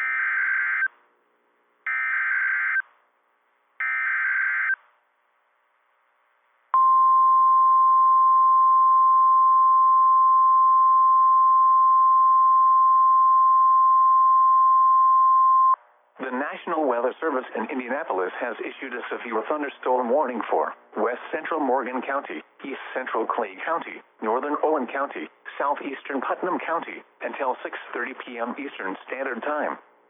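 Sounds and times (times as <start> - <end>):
steady warning alarm tone: 1.9 - 2.8.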